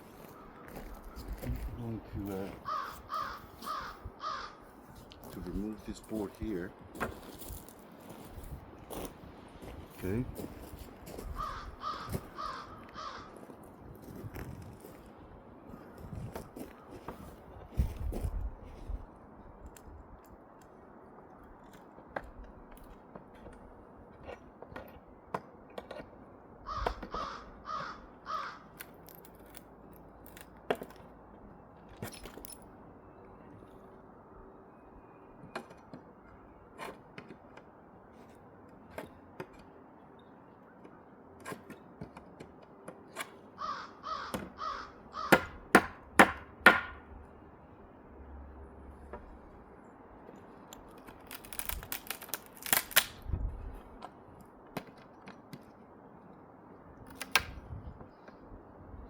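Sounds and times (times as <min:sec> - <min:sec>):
crow cawing: 0:02.6 - 0:04.7, 0:11.4 - 0:13.4, 0:26.6 - 0:28.8, 0:43.6 - 0:45.6
knocks and clicks of hand-work: 0:45.3 - 0:47.0.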